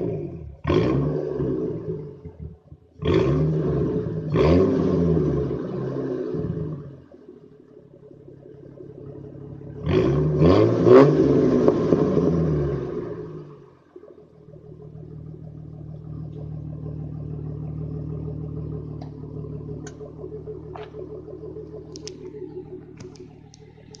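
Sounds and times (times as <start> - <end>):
car engine revving and idling: 0.0 - 24.0
light clicks: 23.0 - 24.0.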